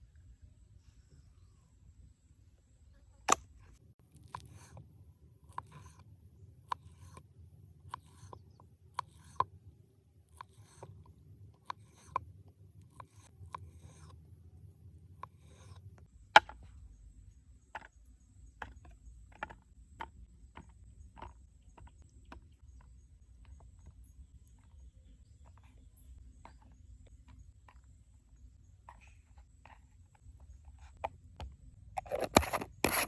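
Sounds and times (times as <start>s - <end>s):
low steady hum: 0.0s - 19.2s.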